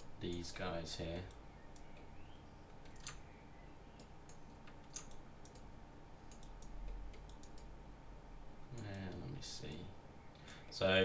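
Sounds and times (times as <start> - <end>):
faint steady hum: 0.0 - 11.0
mouse and keyboard clicks: 4.0 - 5.7, 6.3 - 7.7.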